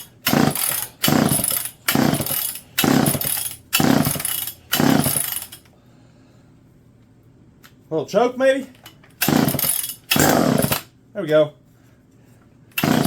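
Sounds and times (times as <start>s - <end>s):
chainsaw starter cord pulls: 0.0s - 5.6s, 9.2s - 10.9s, 12.8s - 13.0s.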